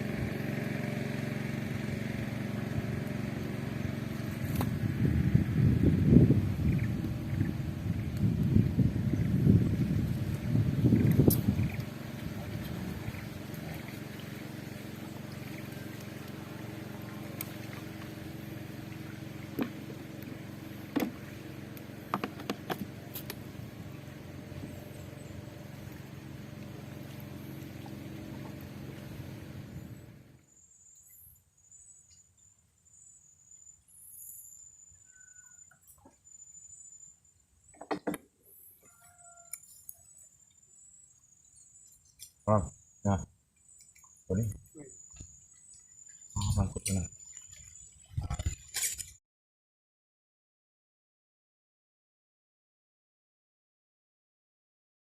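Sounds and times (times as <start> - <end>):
small boat engine running: 0.0 - 49.0
faint high chirping: 30.5 - 37.8.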